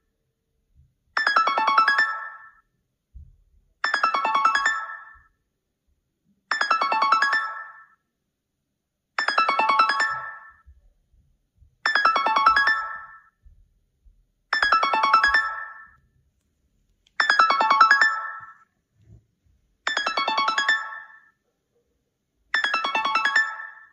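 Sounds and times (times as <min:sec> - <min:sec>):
phone ringtone: 0:01.2 - 0:02.7, 0:03.8 - 0:05.4, 0:06.5 - 0:08.1, 0:09.2 - 0:10.8, 0:11.8 - 0:13.4, 0:14.5 - 0:16.1, 0:17.2 - 0:18.8, 0:19.8 - 0:21.4, 0:22.5 - 0:23.9.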